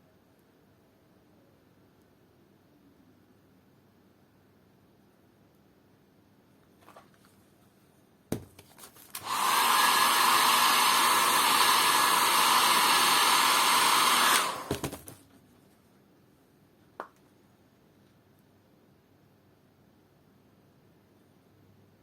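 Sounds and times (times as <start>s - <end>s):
hot-air blower running: 9.2s - 15.0s.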